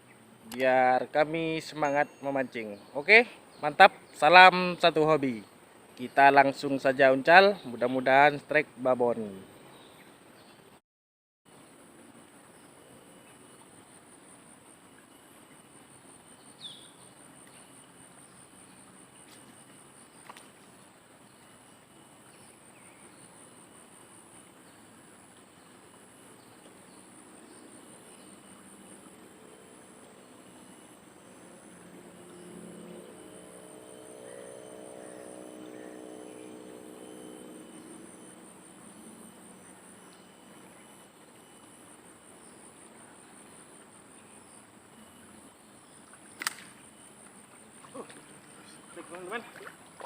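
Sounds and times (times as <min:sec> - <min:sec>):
insects chirring: 0:00.0 - 0:10.5, 0:11.6 - 0:50.0
distant motor engine humming: 0:12.2 - 0:50.0.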